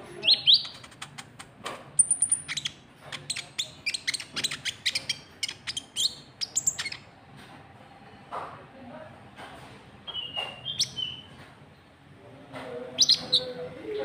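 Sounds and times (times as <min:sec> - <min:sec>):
bird chirping and whistling: 0:02.0 - 0:07.0, 0:10.1 - 0:11.3, 0:13.0 - 0:13.5.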